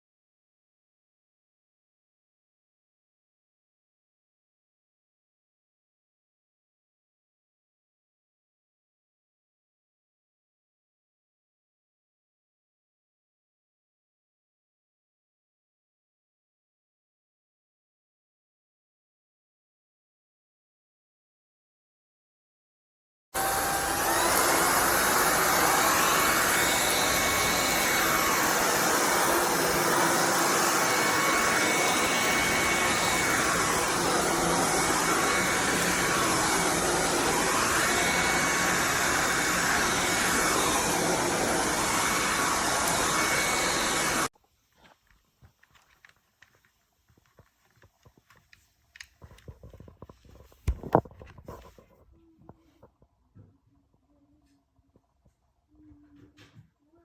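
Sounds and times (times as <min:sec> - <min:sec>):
vacuum cleaner running: 0:23.4 - 0:44.3.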